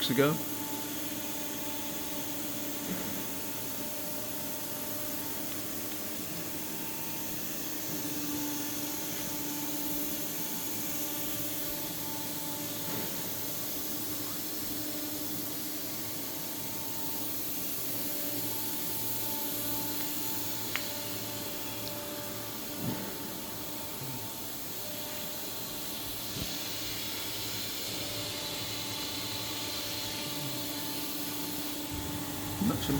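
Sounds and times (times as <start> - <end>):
steady hiss: 17.3 - 32.9
faint even hum: 23.7 - 25.2.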